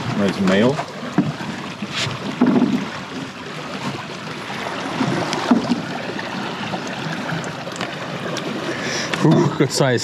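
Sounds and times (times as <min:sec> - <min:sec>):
water against boat: 0:00.0 - 0:10.0
soft knocks: 0:02.4 - 0:02.9, 0:05.4 - 0:05.9.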